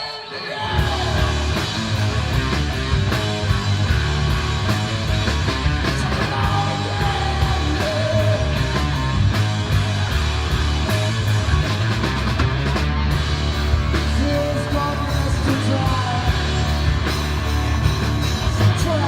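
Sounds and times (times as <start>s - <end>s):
person singing or shouting: 0.0s - 1.8s, 5.9s - 9.0s, 18.6s - 19.0s
loud rock music: 0.0s - 19.0s.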